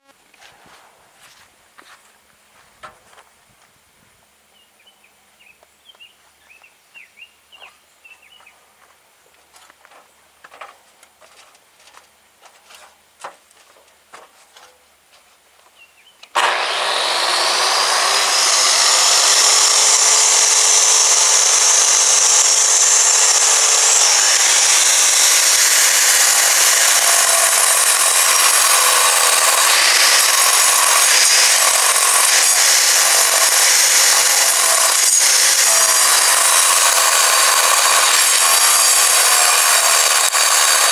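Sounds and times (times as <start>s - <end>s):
light knocks and steps: 0.3s - 4.2s, 7.6s - 15.9s
angle grinder cutting stone: 16.3s - 40.9s.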